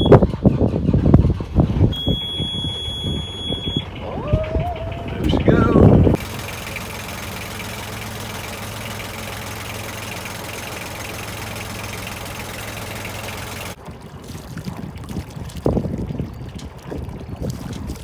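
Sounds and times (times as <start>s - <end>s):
boat engine idling: 0.0s - 13.8s.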